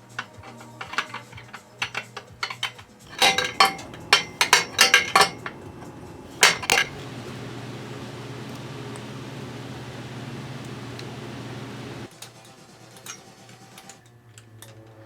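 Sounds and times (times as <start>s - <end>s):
metal tools clinking and clattering: 0.0s - 12.1s
low steady hum: 3.1s - 12.1s.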